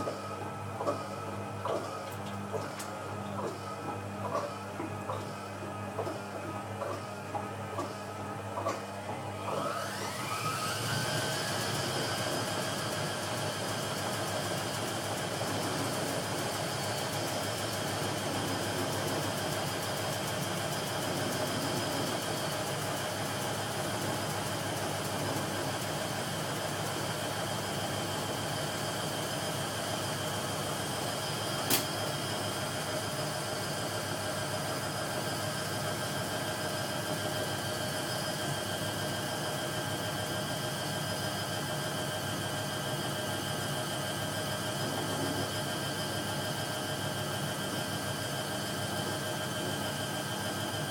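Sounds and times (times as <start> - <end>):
washing machine spinning: 0.0 - 50.9
sharp click: 31.7 - 31.9.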